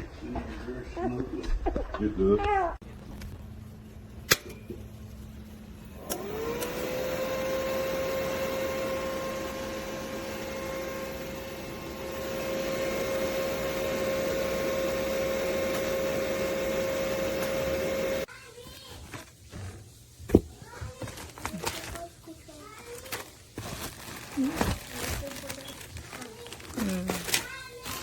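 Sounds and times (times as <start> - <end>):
fan motor whirring: 5.7 - 18.3.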